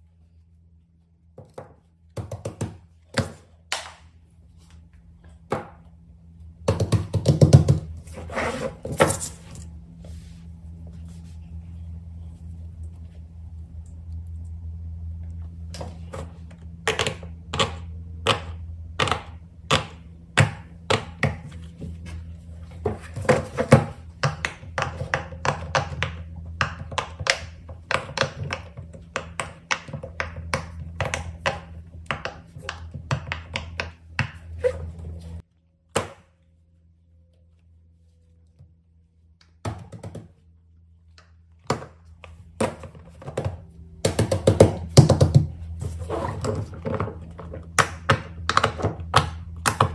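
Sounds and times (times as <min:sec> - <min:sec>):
low hum: 0:02.8 - 0:28.0, 0:28.7 - 0:39.6.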